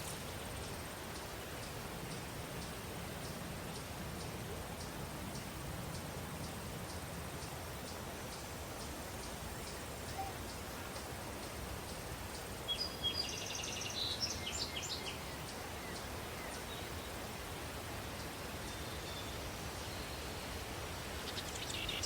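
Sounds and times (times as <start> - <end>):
bird singing: 12.7 - 16.9.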